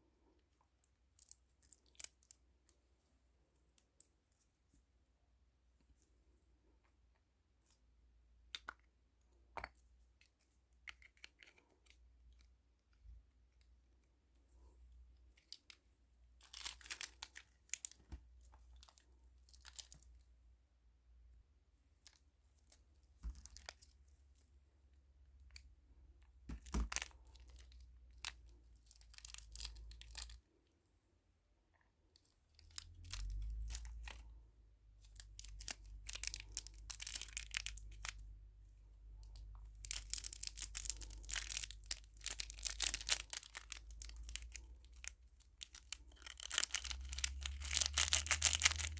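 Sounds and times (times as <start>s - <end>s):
plastic packaging tearing and crinkling: 45.6s - 48.9s.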